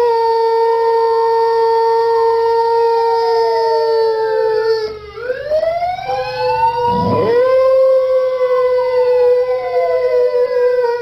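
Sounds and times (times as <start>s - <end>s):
sirens wailing: 4.3s - 11.0s
dog howling: 6.7s - 11.0s.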